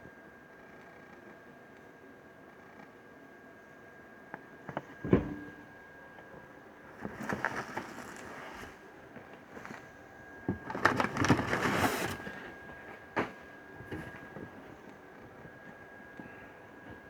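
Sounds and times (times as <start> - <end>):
packaging crinkling: 7.0 - 8.8, 10.5 - 12.5.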